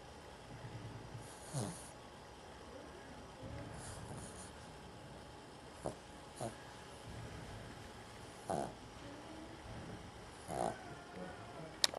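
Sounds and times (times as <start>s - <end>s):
dog snoring: 0.4s - 2.0s, 3.6s - 4.7s, 5.8s - 8.8s, 9.6s - 11.3s.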